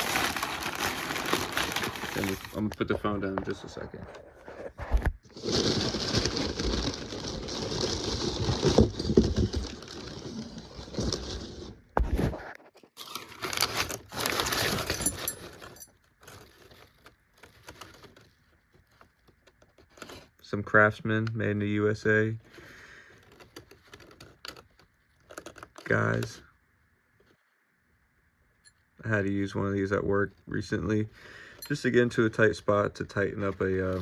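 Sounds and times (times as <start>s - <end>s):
packaging crinkling and rustling: 0.0s - 20.4s, 22.4s - 26.4s, 33.1s - 34.0s.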